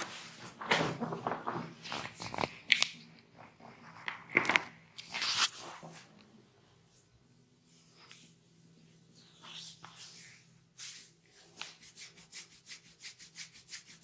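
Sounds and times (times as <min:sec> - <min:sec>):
hand rubbing and slapping skin: 0:09.2 - 0:14.0.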